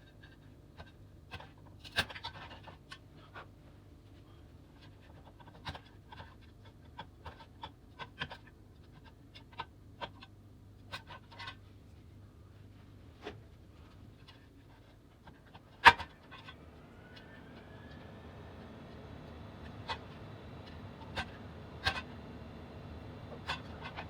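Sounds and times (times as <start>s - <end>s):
faint rising whine: 16.4s - 24.0s.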